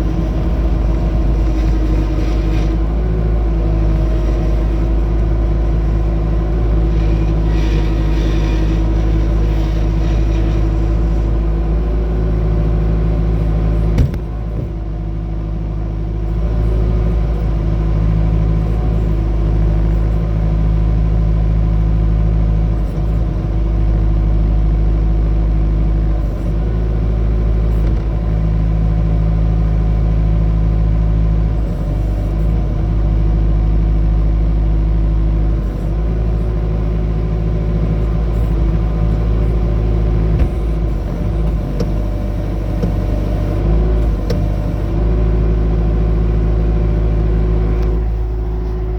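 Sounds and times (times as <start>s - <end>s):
diesel engine running: 0.0s - 48.9s.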